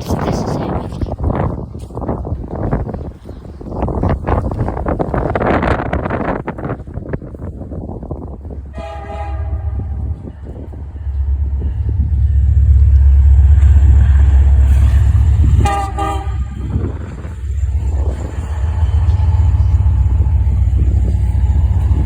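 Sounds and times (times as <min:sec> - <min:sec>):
freight train rumbling past: 0:00.0 - 0:22.0
locomotive horn blasts: 0:08.7 - 0:10.2, 0:15.4 - 0:16.8.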